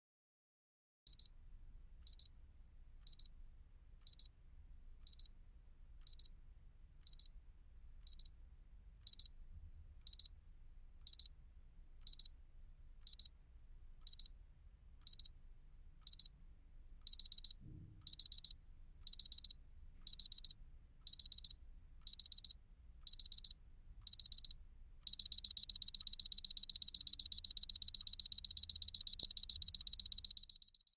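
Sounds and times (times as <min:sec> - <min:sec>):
alarm clock beeping: 0:18.1 - 0:18.5, 0:19.1 - 0:19.5, 0:25.1 - 0:30.9.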